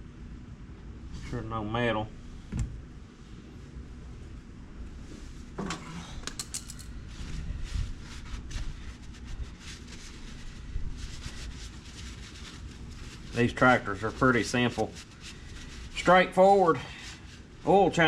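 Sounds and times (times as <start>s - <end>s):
metallic clicks and rattles of tools: 6.2s - 6.9s.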